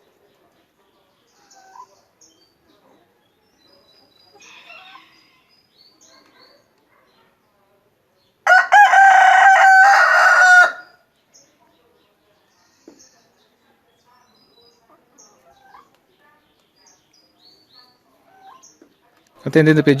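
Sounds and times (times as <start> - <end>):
rooster crowing: 8.4 - 11.0.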